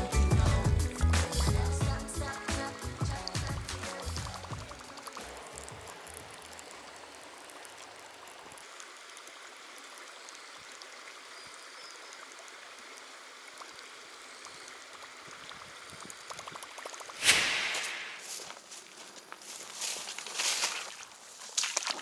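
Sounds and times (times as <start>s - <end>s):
background music: 0.0s - 6.1s
flowing water: 0.0s - 18.4s, 19.9s - 22.0s.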